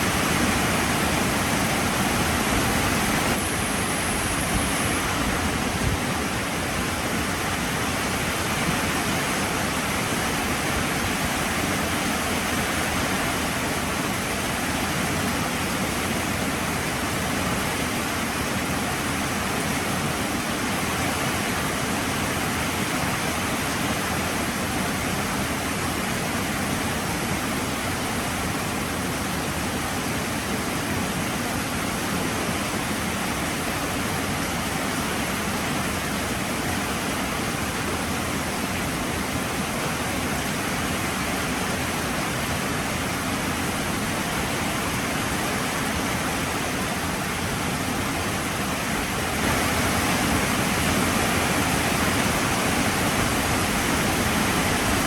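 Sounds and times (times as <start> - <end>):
heavy rain falling: 41.8 - 55.0.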